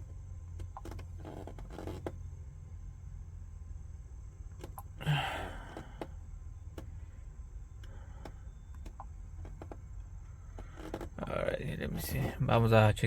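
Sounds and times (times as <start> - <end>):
steady low hum: 0.0 - 13.0
short breath: 5.0 - 6.1.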